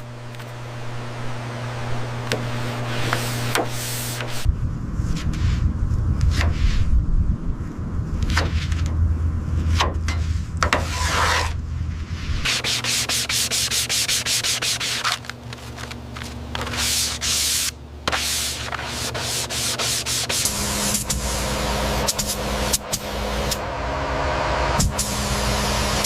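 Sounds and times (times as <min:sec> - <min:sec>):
low steady hum: 0:00.0 - 0:26.0
sanding strokes on a surface: 0:10.8 - 0:11.6, 0:12.4 - 0:15.2, 0:16.6 - 0:21.4.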